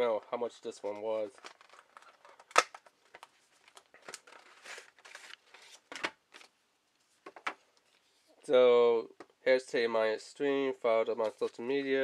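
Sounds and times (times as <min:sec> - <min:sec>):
packaging crinkling: 0:01.2 - 0:06.5.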